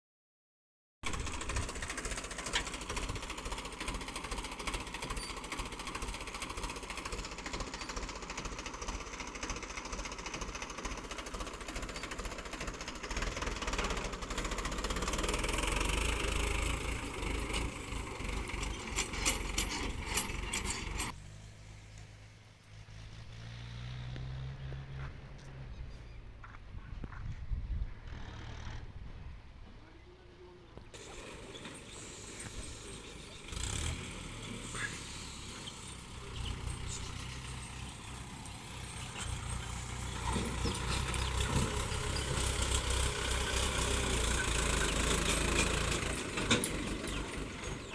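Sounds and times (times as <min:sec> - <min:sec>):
diesel engine knocking: 0:01.0 - 0:21.2, 0:35.4 - 0:47.9.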